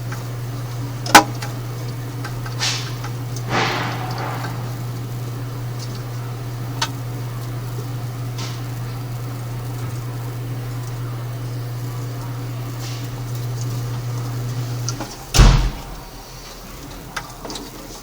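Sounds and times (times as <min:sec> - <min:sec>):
steady low hum: 0:00.0 - 0:17.5
loud knock: 0:03.5 - 0:05.0, 0:15.4 - 0:16.1.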